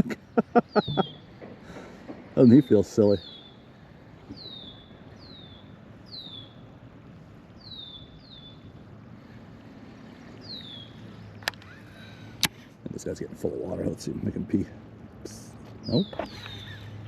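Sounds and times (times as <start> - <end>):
bird high down-slurred call: 0.7 - 1.3.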